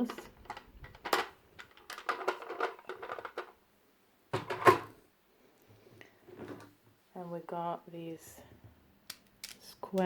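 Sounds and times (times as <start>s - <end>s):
plastic tiles clicking and rattling: 0.0s - 3.5s
sharp plastic clack: 9.1s - 10.0s.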